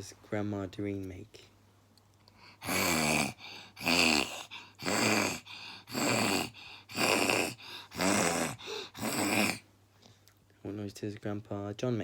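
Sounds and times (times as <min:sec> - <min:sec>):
child mock snoring: 0:02.5 - 0:09.6.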